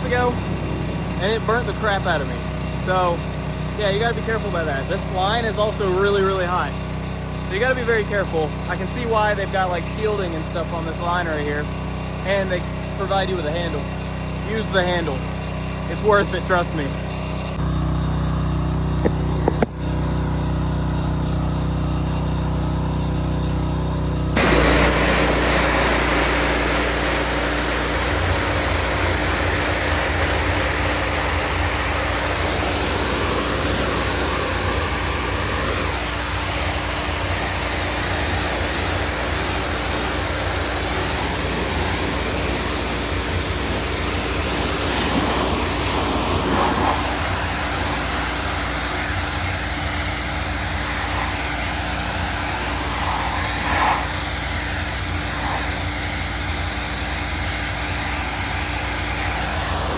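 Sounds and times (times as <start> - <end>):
pressure washer engine drone: 0.0 - 59.9
high-pressure spray hiss: 24.4 - 59.9.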